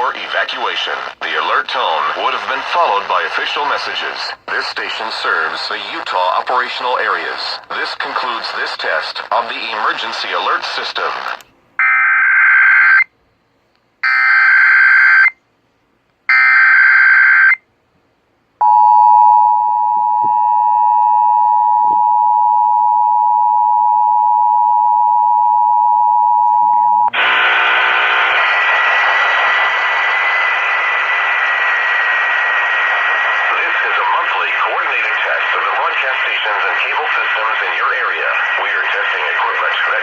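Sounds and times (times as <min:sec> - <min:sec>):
radio noise hiss: 0:00.0 - 0:11.5, 0:27.1 - 0:40.0.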